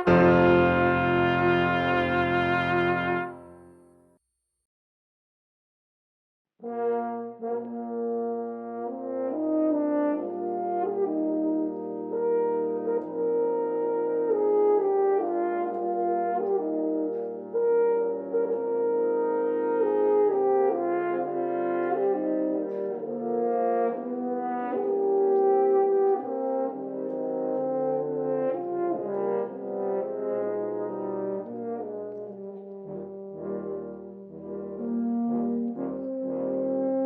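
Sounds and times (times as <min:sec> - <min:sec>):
instrumental music with held notes: 0:00.0 - 0:04.1, 0:06.6 - 0:37.0.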